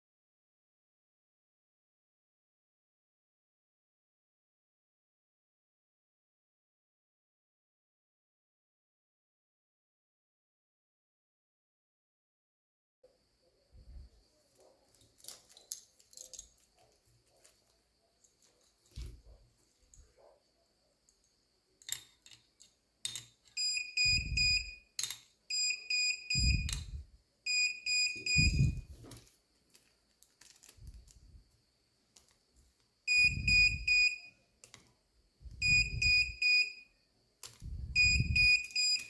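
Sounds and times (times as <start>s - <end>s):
buzzer rapid high beeps: 27.5s - 28.8s, 35.6s - 36.8s, 38.0s - 39.0s.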